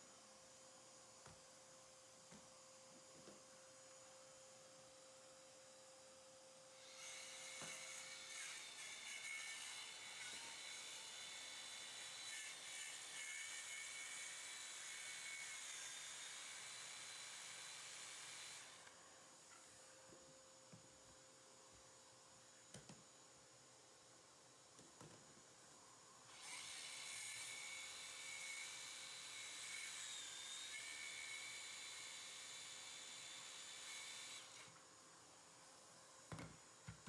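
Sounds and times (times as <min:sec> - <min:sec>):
faint steady hum: 0:18.6 - 0:37.0.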